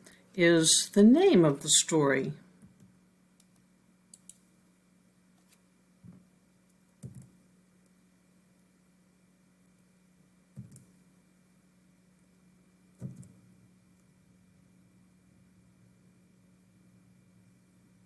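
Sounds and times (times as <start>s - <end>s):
faint steady hum: 0.0s - 18.0s
small clicks: 3.4s - 4.4s.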